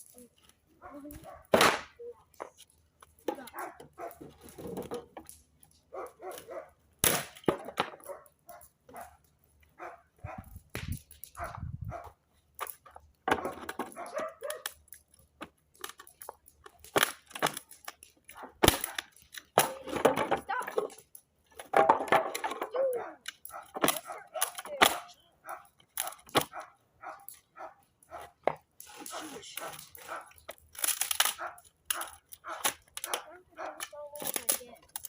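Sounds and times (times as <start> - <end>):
dog barking: 0.8 - 1.5, 3.6 - 4.2, 5.9 - 6.8, 8.0 - 9.2, 9.8 - 10.5, 11.4 - 12.2, 13.3 - 14.7, 22.8 - 28.4, 29.1 - 30.4, 31.4 - 33.9.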